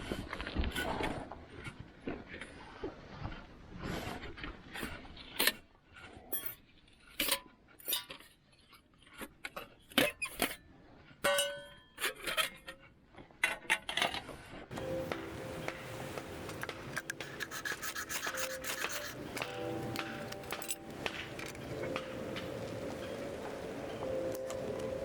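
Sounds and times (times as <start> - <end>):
metal items clinking and knocking: 14.7 - 25.0.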